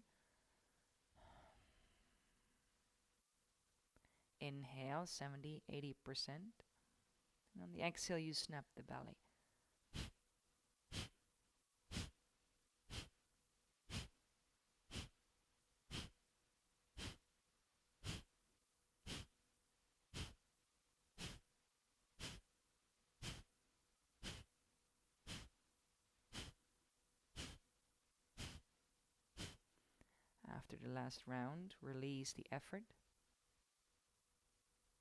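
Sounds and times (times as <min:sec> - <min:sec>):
forceful nasal exhales: 0:09.9 - 0:10.2, 0:10.9 - 0:11.2, 0:11.9 - 0:12.2, 0:12.9 - 0:13.2, 0:13.9 - 0:14.2, 0:14.9 - 0:15.2, 0:15.9 - 0:16.2, 0:16.9 - 0:17.2, 0:18.0 - 0:18.3, 0:19.0 - 0:19.4, 0:20.1 - 0:20.4, 0:21.2 - 0:21.5, 0:22.2 - 0:22.5, 0:23.2 - 0:23.5, 0:24.2 - 0:24.5, 0:25.2 - 0:25.6, 0:26.3 - 0:26.6, 0:27.3 - 0:27.6, 0:28.4 - 0:28.7, 0:29.3 - 0:29.7.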